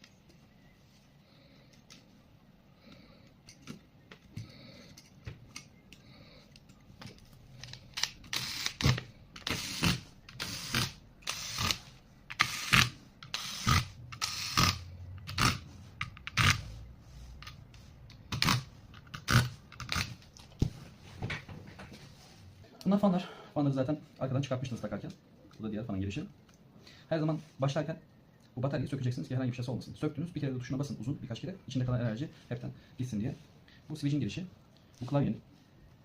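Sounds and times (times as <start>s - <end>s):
laptop parts clicking and knocking: 3.3s - 6.0s.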